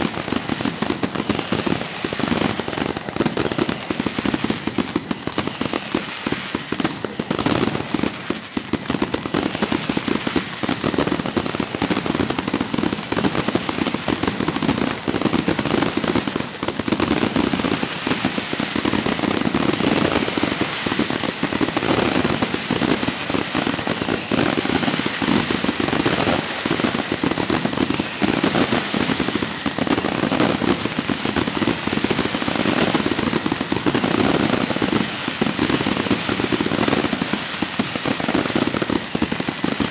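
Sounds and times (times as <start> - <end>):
fireworks cracking and popping: 0.0 - 39.9.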